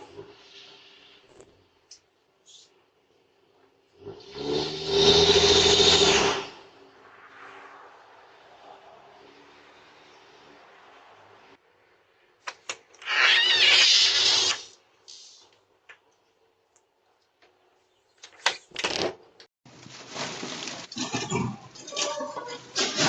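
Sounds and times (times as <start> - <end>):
rustling: 19.7 - 23.0.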